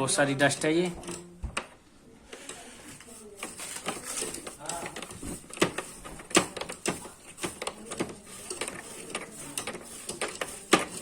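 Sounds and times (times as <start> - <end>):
brush scrubbing fan blades: 2.4 - 11.0.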